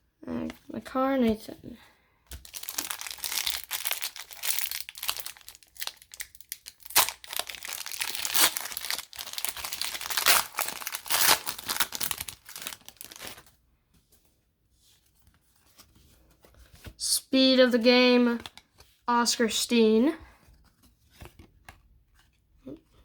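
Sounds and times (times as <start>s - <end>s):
plastic and foil packaging crinkling: 2.3s - 13.5s.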